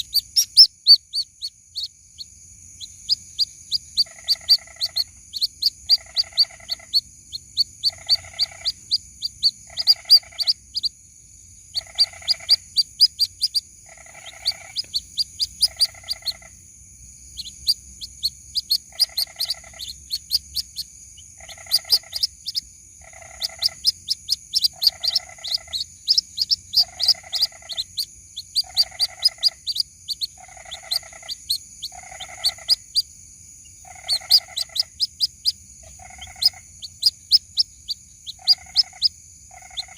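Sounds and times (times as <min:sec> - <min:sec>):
buzzy pulsed bird call: 0:00.0 - 0:11.0
chicks cheeping: 0:00.0 - 0:11.0, 0:11.7 - 0:39.9.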